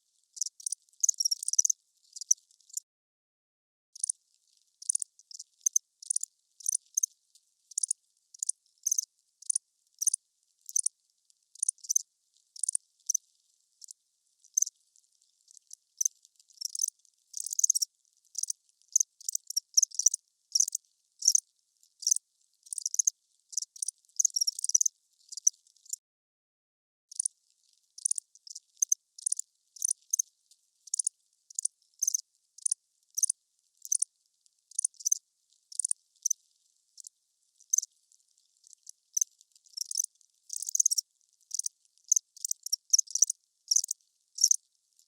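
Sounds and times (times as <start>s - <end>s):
cricket chirping: 0.4s - 2.8s, 4.0s - 4.2s, 4.8s - 7.1s, 7.7s - 10.9s, 11.6s - 12.0s, 12.6s - 13.2s, 14.5s - 14.7s, 15.5s - 21.4s, 22.0s - 26.0s, 28.0s - 34.1s, 34.7s - 36.4s, 37.7s - 37.9s, 38.6s - 44.6s.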